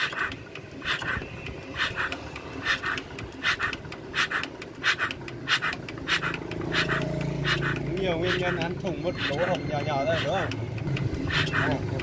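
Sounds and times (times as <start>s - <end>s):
diesel engine turning over slowly: 0.0s - 12.0s
air wheezing in grunting puffs: 1.8s - 8.4s.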